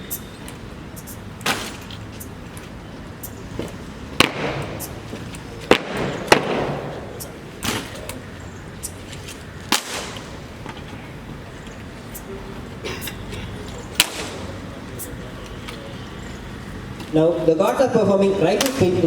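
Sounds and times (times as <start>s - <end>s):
rifles slapped and struck: 4.2s - 4.9s, 5.7s - 8.2s, 9.7s - 10.4s, 14.0s - 14.5s, 18.6s - 19.0s.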